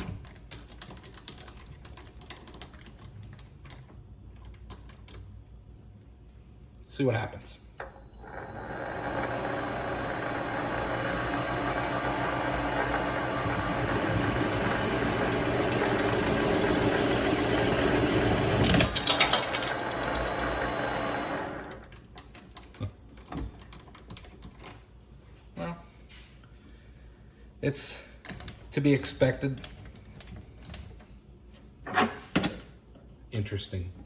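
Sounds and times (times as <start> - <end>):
lathe cutting metal: 8.2 - 18.8, 19.6 - 21.7.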